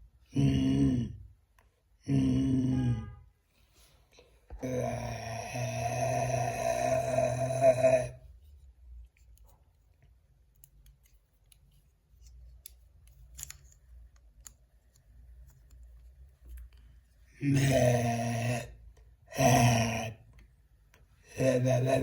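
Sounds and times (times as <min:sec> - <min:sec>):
person humming: 0:00.3 - 0:01.2, 0:02.0 - 0:03.2, 0:04.5 - 0:08.3, 0:17.4 - 0:20.2, 0:21.3 - 0:22.0.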